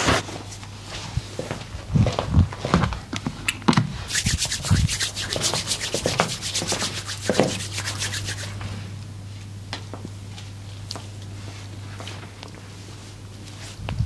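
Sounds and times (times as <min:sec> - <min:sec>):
hands rubbing briskly: 0:04.1 - 0:08.7.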